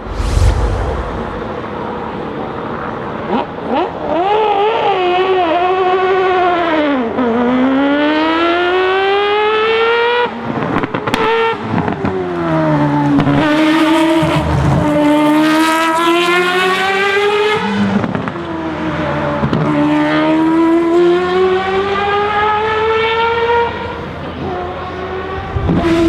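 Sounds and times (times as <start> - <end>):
racing car engine accelerating: 0.0 - 2.4, 18.9 - 26.0.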